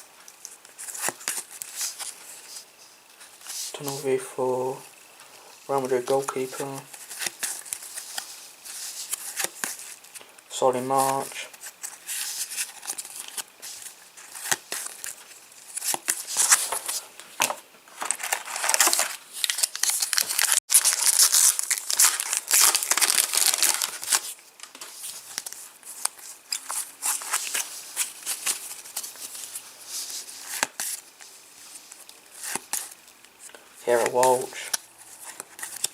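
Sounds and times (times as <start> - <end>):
card packet wrappers tearing: 18.0 - 24.4, 33.9 - 35.9.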